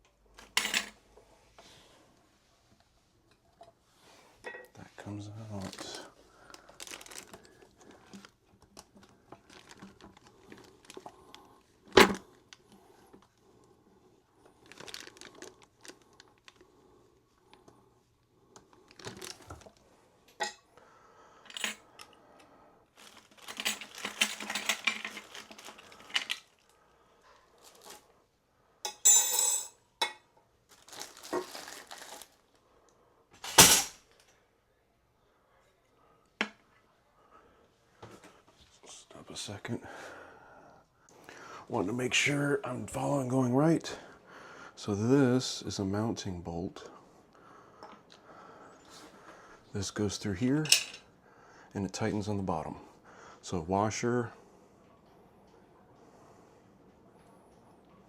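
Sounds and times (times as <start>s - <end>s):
packaging rustling: 5.4s - 12.6s, 14.4s - 16.6s, 18.6s - 19.9s, 22.9s - 26.7s, 27.5s - 28.1s, 30.7s - 32.6s
small parts clinking and clicking: 23.1s - 26.6s.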